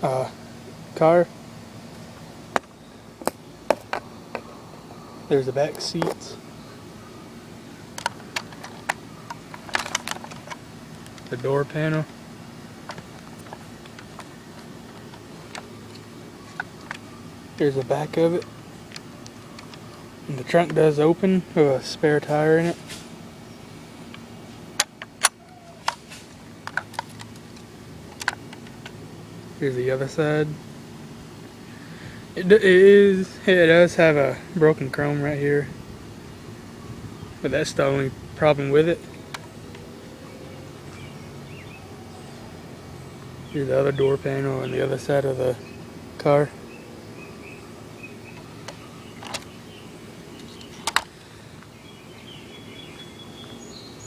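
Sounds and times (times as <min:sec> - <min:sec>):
steady background hiss: 0:00.0 - 0:54.0
steady low hum: 0:00.0 - 0:54.0
faint bird chirps: 0:36.7 - 0:37.5, 0:46.6 - 0:54.0
light clicks of model car parts: 0:50.4 - 0:51.7.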